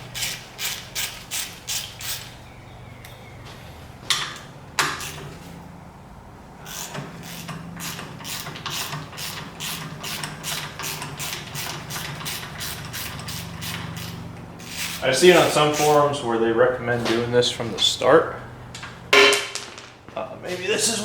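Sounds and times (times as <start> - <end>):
ratchet wrench clicking: 0.2 - 2.3, 4.8 - 5.3, 6.7 - 15.0.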